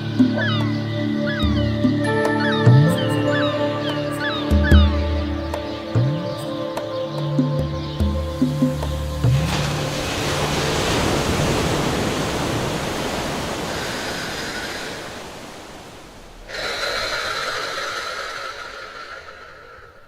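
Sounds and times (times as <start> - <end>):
sea waves on beach: 8.4 - 20.0.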